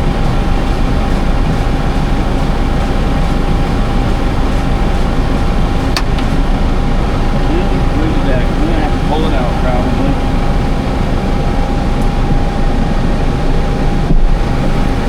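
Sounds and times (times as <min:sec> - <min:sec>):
high hum: 0:00.0 - 0:15.0
tractor diesel engine running: 0:00.0 - 0:15.0.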